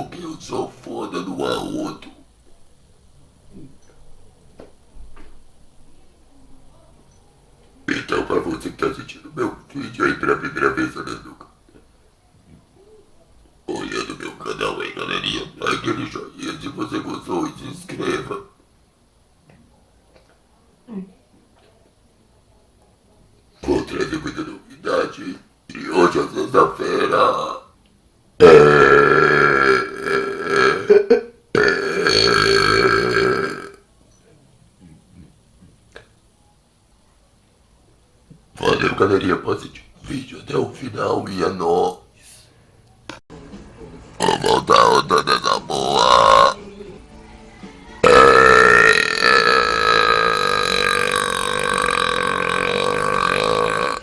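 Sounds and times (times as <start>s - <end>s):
man belching: 9.5s - 11.5s, 13.7s - 17.3s, 26.6s - 27.7s, 28.4s - 33.8s, 44.2s - 46.6s, 48.0s - 54.0s.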